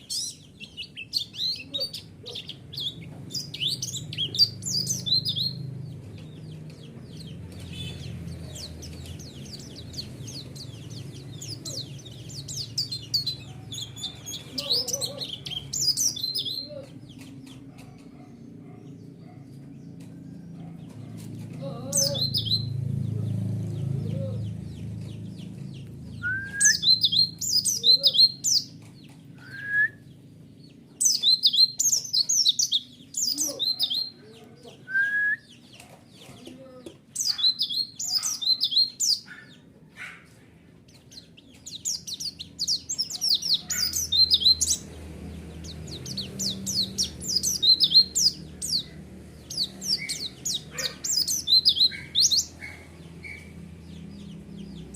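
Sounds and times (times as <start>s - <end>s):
bird twittering: 0.0s - 19.4s, 24.0s - 30.1s, 31.0s - 34.2s, 40.9s - 45.0s, 45.6s - 54.9s.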